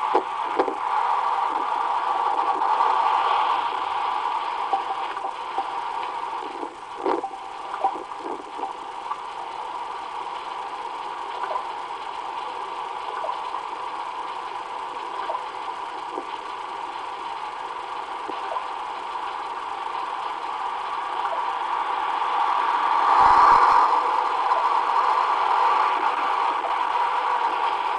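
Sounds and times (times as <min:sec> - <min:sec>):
faint scattered clicks: 0:00.0 - 0:00.8
steady playback hum: 0:00.0 - 0:27.9.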